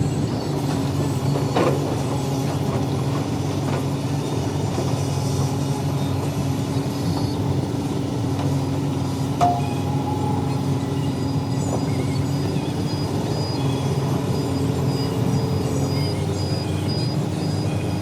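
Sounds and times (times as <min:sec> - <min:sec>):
heavy diesel engine running: 0:00.0 - 0:18.0
sharp metallic clank: 0:09.4 - 0:10.2.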